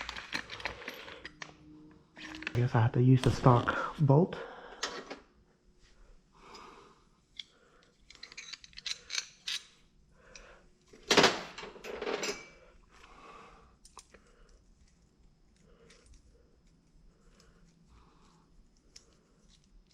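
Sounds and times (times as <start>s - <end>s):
metal hardware clinking: 7.3s - 9.8s, 11.1s - 12.6s.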